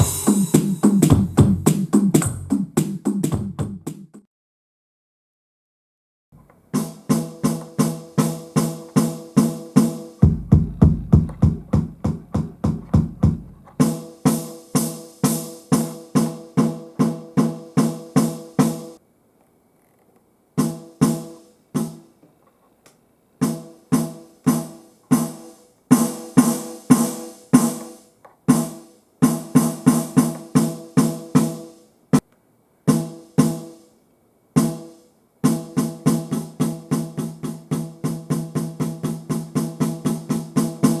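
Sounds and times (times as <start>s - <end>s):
electronic drums struck: 0.0s - 4.0s, 6.8s - 18.8s.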